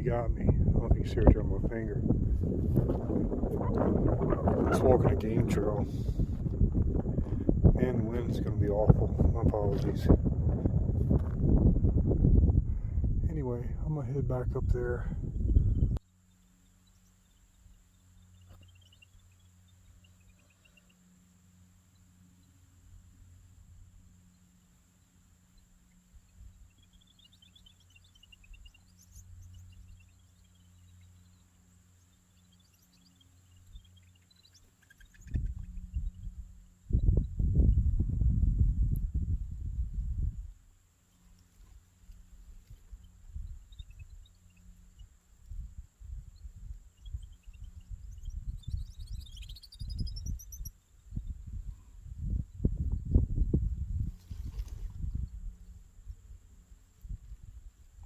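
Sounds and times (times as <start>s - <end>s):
wind rumble on microphone: 0.0s - 16.1s, 34.9s - 40.8s, 41.5s - 58.0s
small bird chirping: 14.6s - 39.3s, 39.9s - 58.0s.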